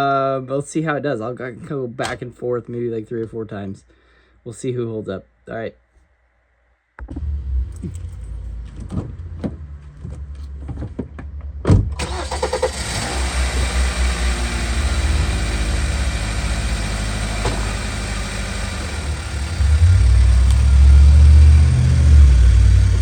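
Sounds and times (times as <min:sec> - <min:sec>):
car engine idling: 0:07.0 - 0:23.0.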